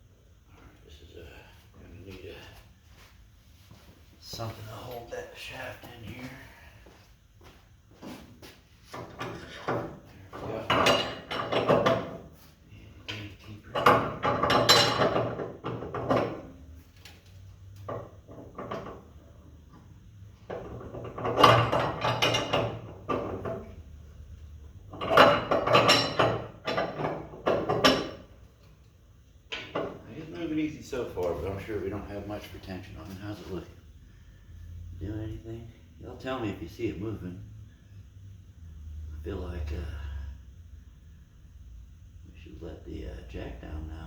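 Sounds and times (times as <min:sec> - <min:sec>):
wrench clanking and scraping metal: 0:09.0 - 0:12.2, 0:13.7 - 0:16.5, 0:20.5 - 0:23.7, 0:24.9 - 0:28.3.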